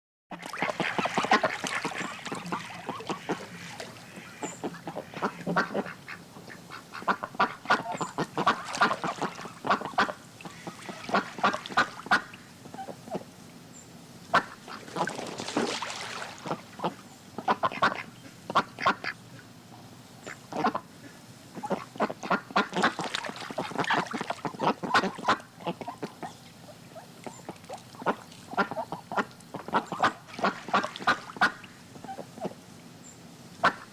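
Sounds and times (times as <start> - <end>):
ducks quacking: 0.3 - 13.2, 16.4 - 19.2, 20.2 - 32.6, 33.6 - 33.9.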